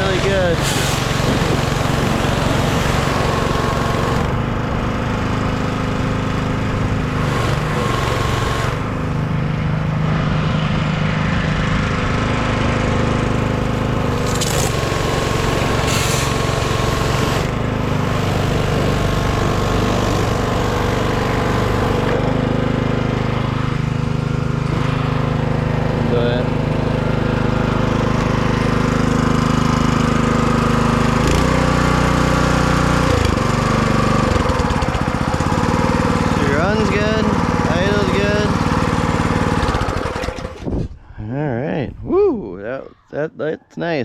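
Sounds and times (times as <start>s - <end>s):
small gas engine running: 0.0s - 41.0s
hiss of water spray: 15.9s - 16.4s.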